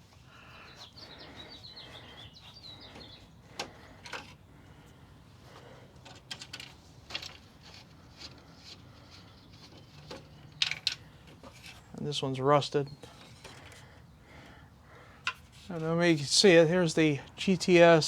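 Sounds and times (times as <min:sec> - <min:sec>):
faint bird chirps: 0:00.3 - 0:04.0
clicks and scrapes of screws: 0:06.0 - 0:11.8.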